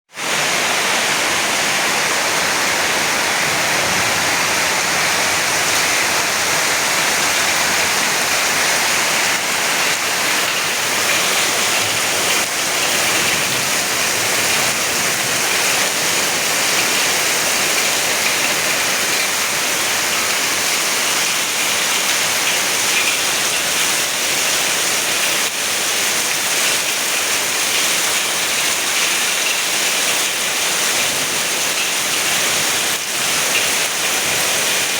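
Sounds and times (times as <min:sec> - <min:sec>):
heavy rain pouring: 0:00.1 - 0:34.9.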